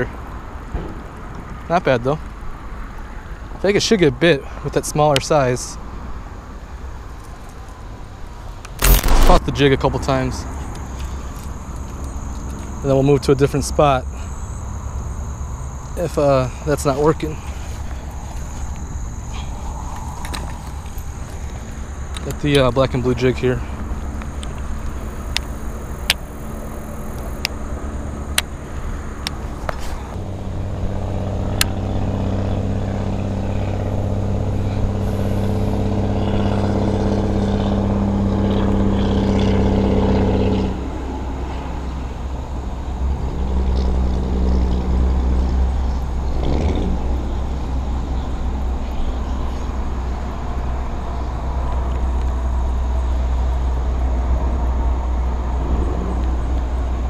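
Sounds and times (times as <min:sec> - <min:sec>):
sharp clicks: 0:08.6 - 0:09.5
engine drone: 0:08.6 - 0:57.0
low rumble: 0:08.8 - 0:12.3.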